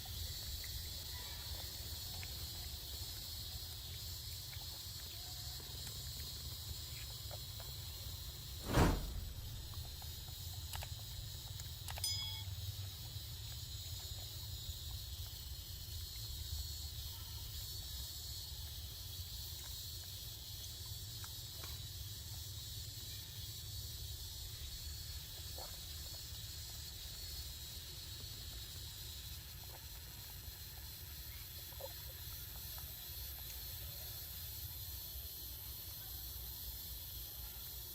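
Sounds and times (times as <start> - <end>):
low rumble: 8.6 - 10.0.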